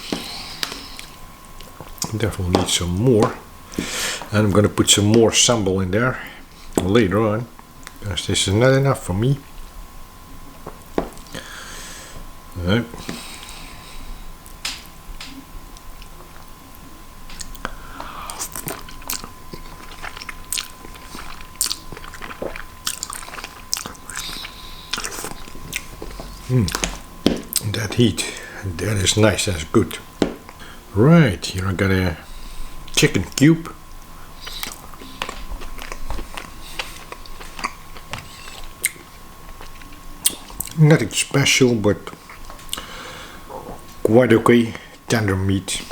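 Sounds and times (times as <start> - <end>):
person chewing noodles: 17.3 - 28.5, 34.1 - 40.8, 42.1 - 43.9.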